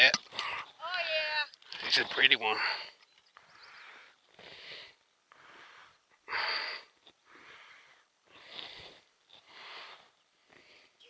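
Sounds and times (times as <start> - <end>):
person breathing hard: 2.6 - 11.0.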